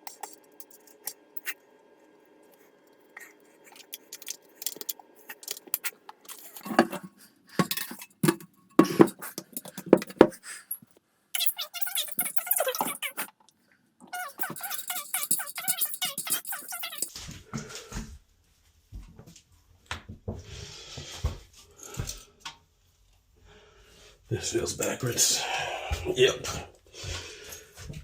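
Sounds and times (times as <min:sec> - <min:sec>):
hard objects clinking and scraping: 0:03.6 - 0:13.3, 0:14.1 - 0:17.1
objects rattling: 0:03.6 - 0:13.3, 0:14.1 - 0:17.1.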